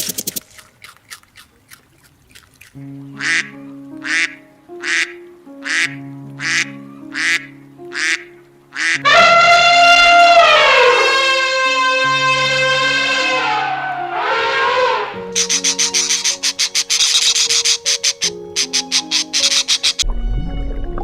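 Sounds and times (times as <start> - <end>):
background music: 2.6 - 21.0
duck quacking: 3.2 - 20.0
loud horn-like blast: 9.0 - 15.4.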